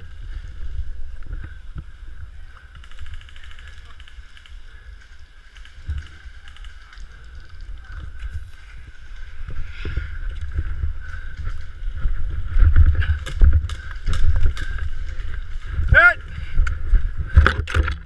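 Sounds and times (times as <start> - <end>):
rumbling wind on microphone: 0.0 - 18.0
microphone handling noise: 16.5 - 18.0.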